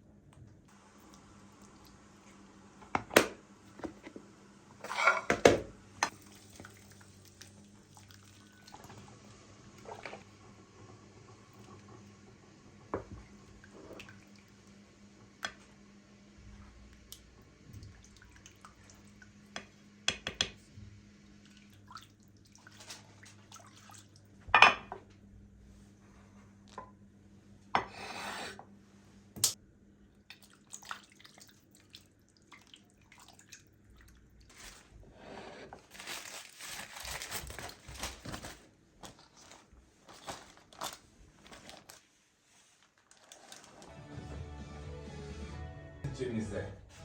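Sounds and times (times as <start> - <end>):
dishes and cutlery clinking: 4.8 - 5.6.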